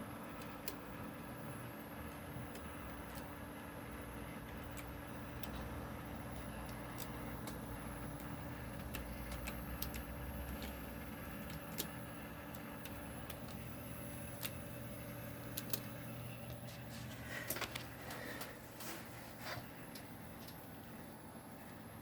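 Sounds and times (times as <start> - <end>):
hard drive grinding: 0.0 - 21.1
computer humming: 0.0 - 22.0
hard drive seek clicks: 0.2 - 21.8.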